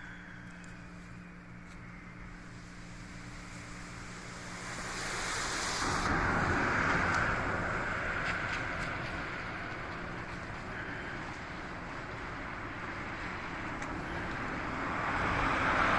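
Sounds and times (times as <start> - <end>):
hiss of spray off wet road: 2.4 - 11.2
vehicle passing: 2.6 - 15.9.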